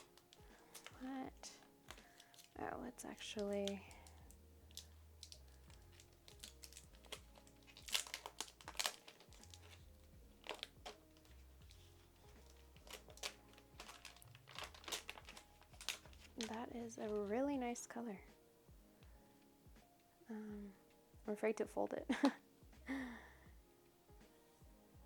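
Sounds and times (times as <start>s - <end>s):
plastic packaging crinkling and tearing: 0.0s - 17.5s
faint background music: 0.0s - 25.0s.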